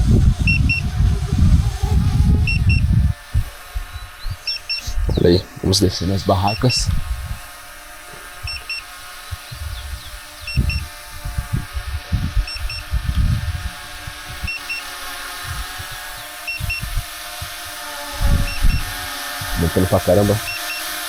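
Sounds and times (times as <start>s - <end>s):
wind buffeting microphone: 0.0s - 20.5s
drone warning double beeps: 0.5s - 0.9s, 2.4s - 2.9s, 4.4s - 4.9s, 8.4s - 10.9s, 12.4s - 12.9s, 14.4s - 14.9s, 16.4s - 17.0s, 18.5s - 18.9s, 20.4s - 20.9s.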